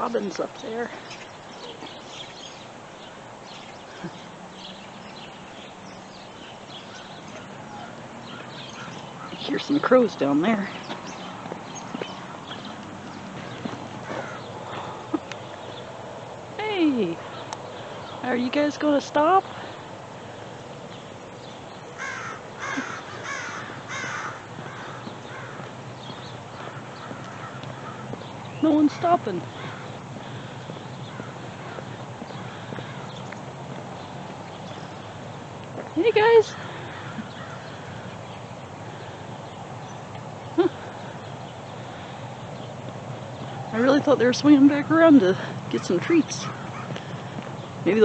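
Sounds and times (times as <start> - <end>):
songbirds chirping: 0.0 - 48.0
crows cawing: 6.9 - 9.4, 11.9 - 15.3, 22.0 - 33.8, 36.5 - 39.6, 45.8 - 47.5.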